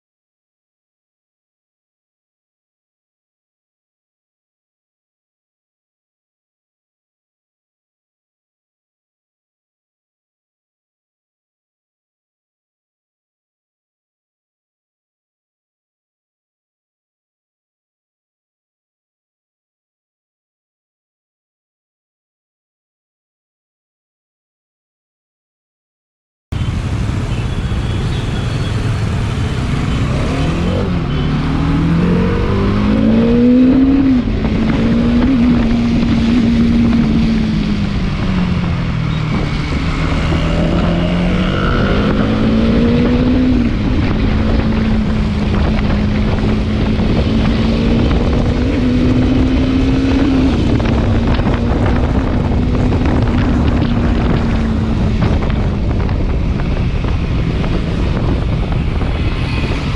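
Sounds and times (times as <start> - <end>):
motorcycle engine: 26.5 - 59.9
wind noise on microphone: 26.6 - 59.9.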